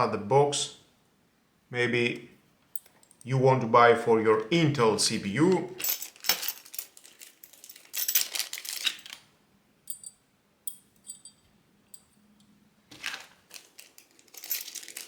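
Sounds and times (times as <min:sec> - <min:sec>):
small metal parts clinking: 0:02.7 - 0:03.3, 0:05.8 - 0:12.2, 0:12.9 - 0:15.0
packaging rustling: 0:05.8 - 0:09.3, 0:12.9 - 0:15.0.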